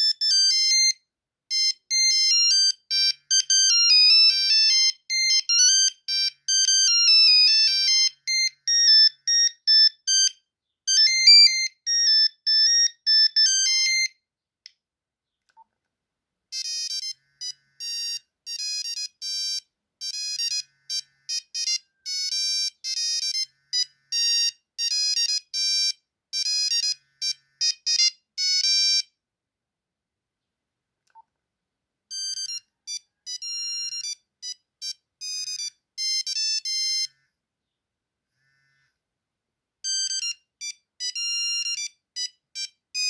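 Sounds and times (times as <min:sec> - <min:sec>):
monophonic phone ringtone: 0:00.0 - 0:14.2, 0:16.5 - 0:29.2, 0:32.1 - 0:37.2, 0:39.8 - 0:43.0.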